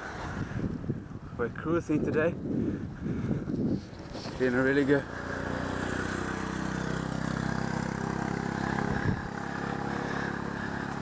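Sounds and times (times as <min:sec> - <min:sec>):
vehicle engine cruising: 0:03.8 - 0:11.0.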